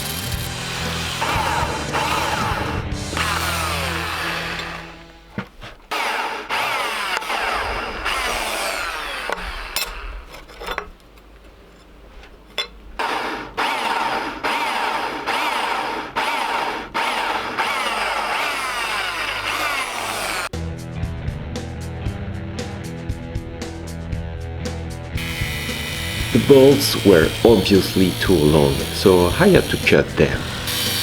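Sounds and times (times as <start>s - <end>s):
drill whine spinning down: 0.0s - 5.1s, 6.7s - 10.1s, 25.2s - 31.0s
power drill running: 0.0s - 5.3s, 5.9s - 10.3s, 13.0s - 20.5s, 25.2s - 31.0s.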